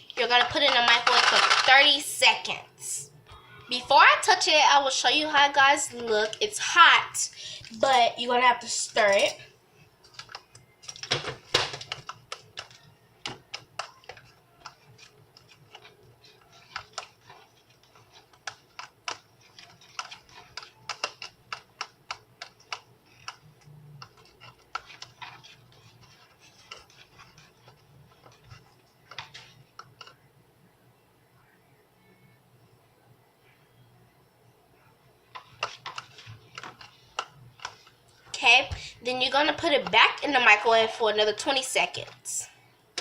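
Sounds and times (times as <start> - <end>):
utensil scraping a bowl: 13.4 - 30.2.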